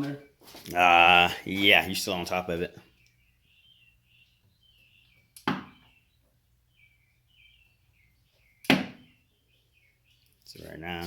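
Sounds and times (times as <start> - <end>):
faint birds chirping: 0.0 - 11.0
sharp knock: 8.7 - 9.0.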